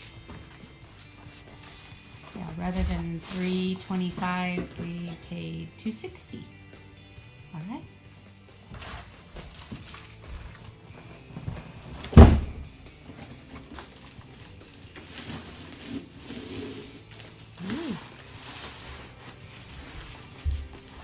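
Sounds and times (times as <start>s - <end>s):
handling noises: 0.0s - 5.5s, 8.6s - 21.0s
background music: 0.0s - 21.0s
heavy thud on floor: 12.1s - 12.7s.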